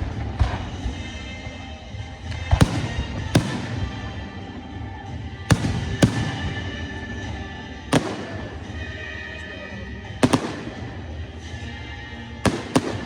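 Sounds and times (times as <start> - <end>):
music with sustained notes: 0.0 - 13.0
fireworks bangs: 2.4 - 4.4, 5.5 - 9.0, 10.2 - 11.4, 12.5 - 13.0.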